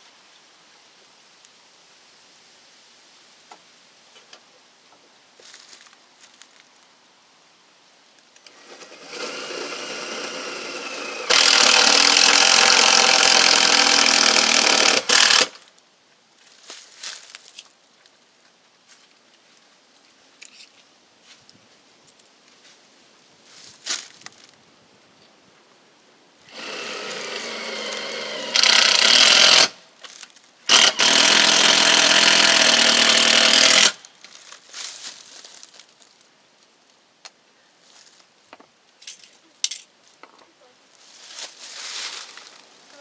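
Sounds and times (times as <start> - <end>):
electric power tool running: 8.5 - 15.5, 26.5 - 29.7, 30.7 - 34.0.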